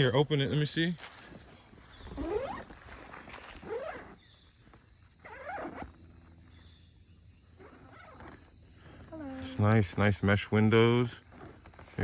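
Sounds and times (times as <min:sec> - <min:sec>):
zipper on fabric: 0:02.0 - 0:04.4, 0:05.2 - 0:06.2, 0:07.5 - 0:09.7.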